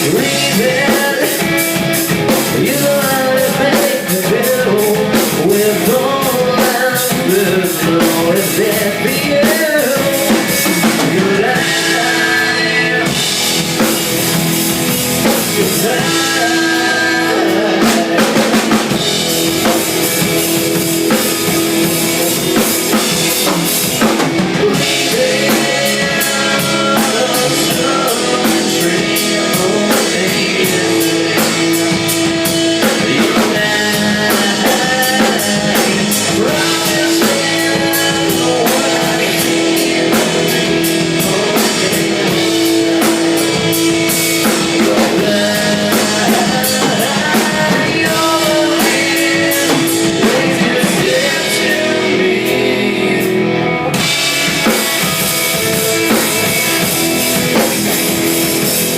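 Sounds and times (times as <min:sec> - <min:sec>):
bass drum and snare beat: 0:00.0 - 0:12.4, 0:17.7 - 0:51.7, 0:54.0 - 0:58.9
rock band playing live: 0:00.0 - 0:58.9.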